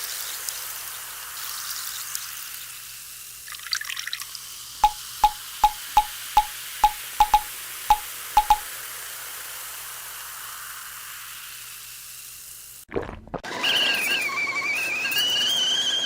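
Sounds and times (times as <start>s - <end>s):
high whistling tone: 4.8s - 8.6s
water drips plinking: 4.8s - 8.6s
sizzling hiss: 8.8s - 12.9s.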